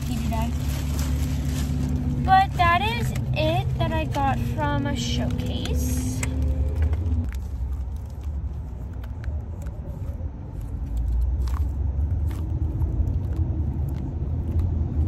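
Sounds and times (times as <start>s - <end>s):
car road rumble: 0.0s - 15.0s.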